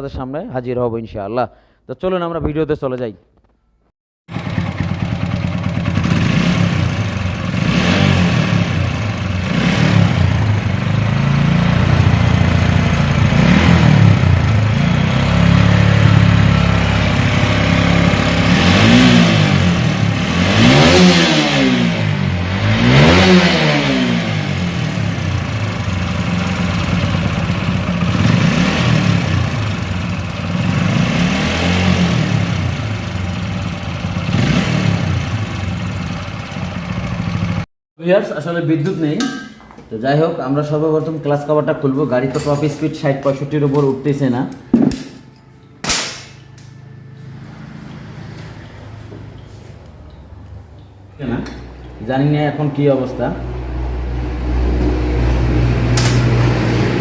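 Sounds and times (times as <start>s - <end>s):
motorcycle engine revving: 4.3s - 37.7s, 46.4s - 57.0s.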